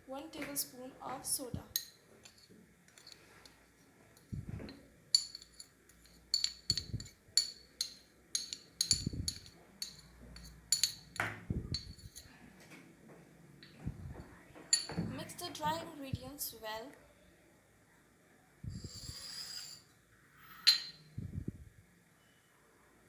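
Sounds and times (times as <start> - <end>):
spoon clinking against bowl: 1.7 - 3.2, 4.2 - 12.3, 14.7 - 15.1, 20.6 - 21.1
soft low thuds: 13.8 - 16.2.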